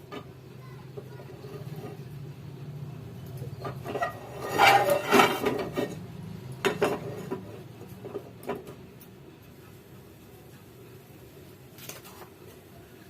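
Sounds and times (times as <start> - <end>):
metal kitchen utensils clattering: 3.2 - 8.8.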